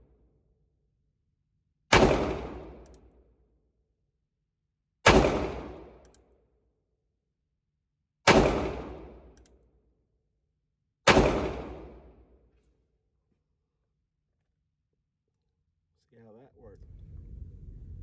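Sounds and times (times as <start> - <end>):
revolver gunshots: 1.9 - 2.8, 5.1 - 6.0, 8.3 - 9.3, 11.1 - 12.2.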